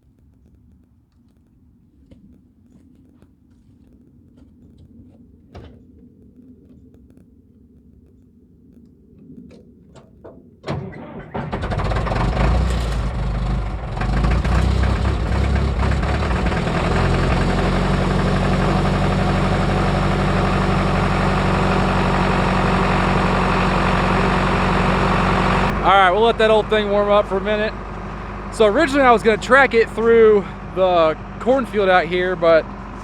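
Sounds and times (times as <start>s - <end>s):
diesel engine starting and idling: 10.6s - 33.0s.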